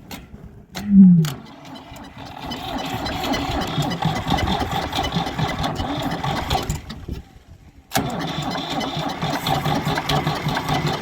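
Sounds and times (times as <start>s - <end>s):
diesel tractor engine cranking: 0.0s - 11.0s.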